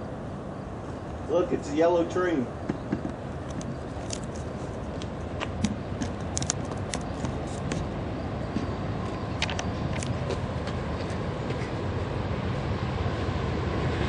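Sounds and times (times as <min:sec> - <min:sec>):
sharp clicks and ticks: 0:02.7 - 0:07.9.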